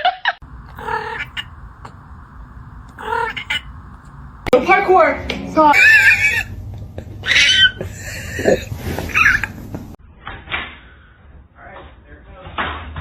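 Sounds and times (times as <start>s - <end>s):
cat meowing: 0.5s - 4.5s, 5.8s - 6.5s, 7.2s - 7.7s.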